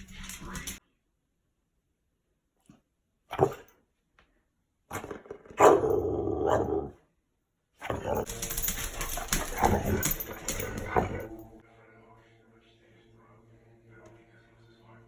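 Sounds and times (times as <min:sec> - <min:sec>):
dog barking and growling: 0:03.2 - 0:03.8, 0:04.9 - 0:07.1, 0:07.8 - 0:11.6.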